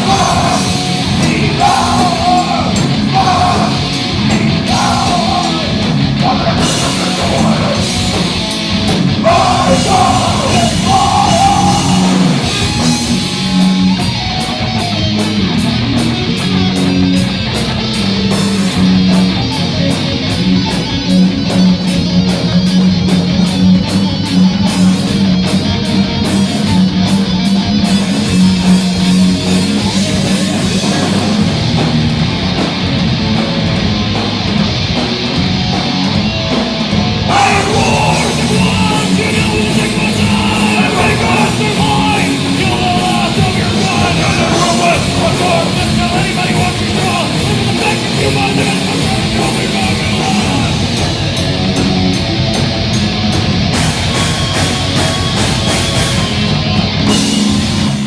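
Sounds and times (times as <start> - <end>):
person singing: 0.0 - 8.3, 9.1 - 13.3, 37.2 - 51.1
heavy metal band playing: 0.0 - 58.0.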